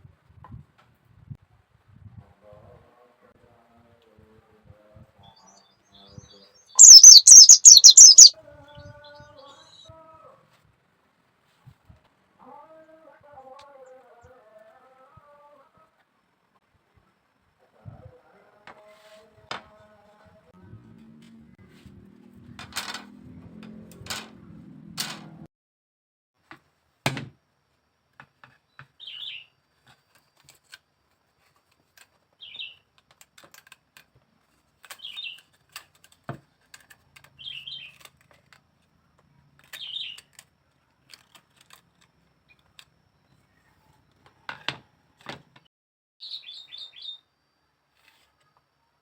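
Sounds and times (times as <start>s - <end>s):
small bird chirping: 5.5s - 8.3s, 29.0s - 29.5s, 32.4s - 32.8s, 34.9s - 35.5s, 39.7s - 40.3s, 46.2s - 47.3s.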